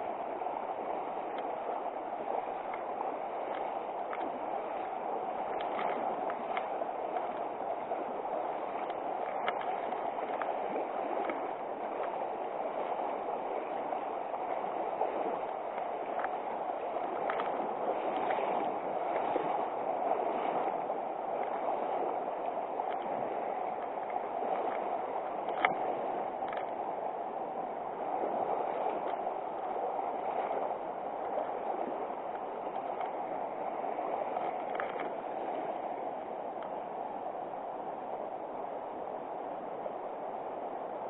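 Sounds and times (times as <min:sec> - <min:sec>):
river water rushing: 0:00.0 - 0:41.0
faint clicks: 0:01.3 - 0:01.5, 0:02.6 - 0:04.9, 0:05.5 - 0:07.5, 0:08.7 - 0:10.6, 0:11.2 - 0:11.4, 0:12.0 - 0:12.2, 0:15.7 - 0:16.4, 0:17.0 - 0:17.6, 0:22.4 - 0:25.8, 0:26.4 - 0:26.8, 0:28.9 - 0:29.7, 0:32.2 - 0:33.2, 0:34.3 - 0:35.2, 0:36.6 - 0:36.8.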